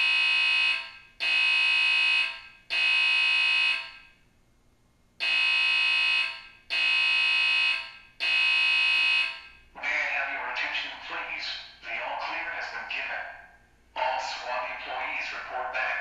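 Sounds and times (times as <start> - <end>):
fire alarm beeping through speaker: 0.0 - 4.2, 5.2 - 9.6.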